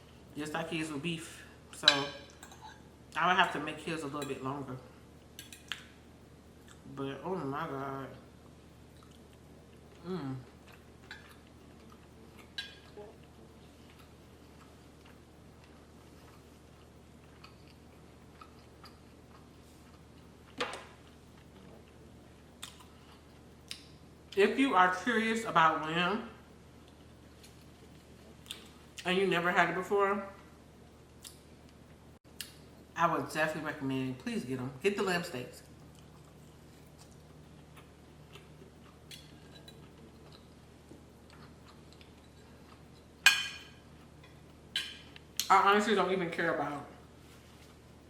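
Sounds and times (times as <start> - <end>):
low steady hum: 0.0 - 48.0
person chewing: 8.9 - 24.0, 35.8 - 43.2.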